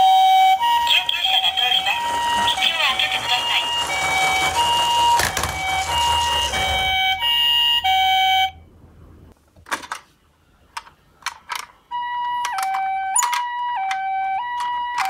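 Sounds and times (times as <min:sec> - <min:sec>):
toy two-tone siren: 0:00.0 - 0:08.6, 0:11.9 - 0:15.0.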